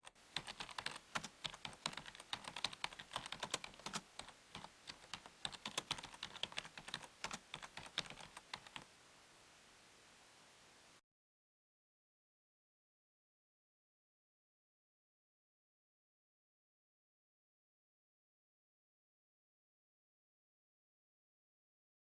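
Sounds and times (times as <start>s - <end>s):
rapid sharp clicks: 0.0s - 8.9s
faint steady hiss: 0.0s - 11.0s.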